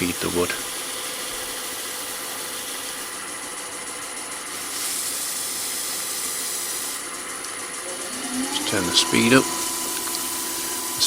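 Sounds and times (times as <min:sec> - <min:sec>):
wood lathe running slowly: 0:00.0 - 0:11.0
hiss of paste rubbed on wood: 0:04.6 - 0:07.0.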